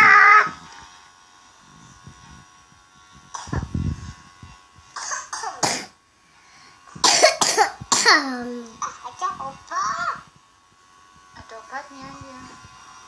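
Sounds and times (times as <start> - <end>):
child coughing: 3.4 - 3.6, 5.0 - 6.0, 7.0 - 8.6.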